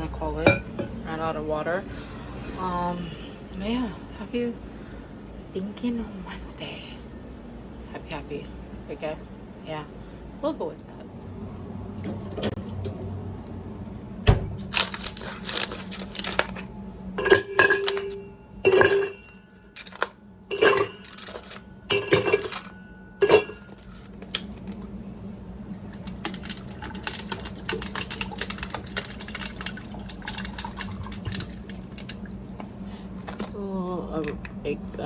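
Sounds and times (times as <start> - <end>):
cup and lid clinking: 17.2 - 23.9.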